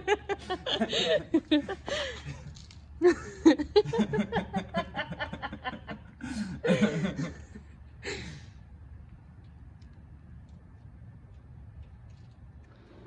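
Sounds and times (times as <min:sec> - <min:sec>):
people laughing: 0:00.0 - 0:08.3.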